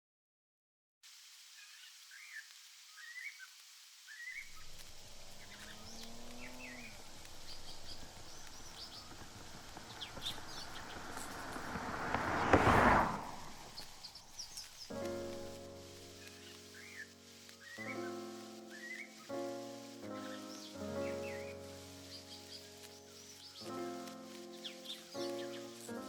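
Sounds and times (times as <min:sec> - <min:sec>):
birds chirping: 0:04.1 - 0:26.0
rush of noise: 0:04.4 - 0:15.8.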